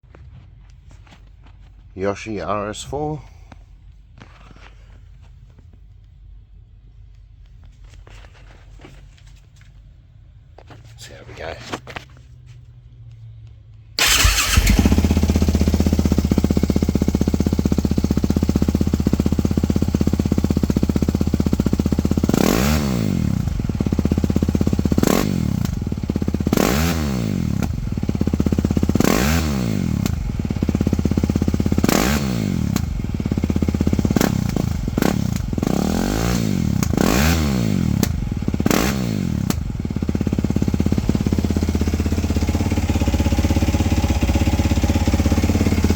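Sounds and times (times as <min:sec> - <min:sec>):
motorcycle engine starting and idling: 0:13.0 - 0:45.9
motorcycle throttle blips: 0:13.0 - 0:45.9.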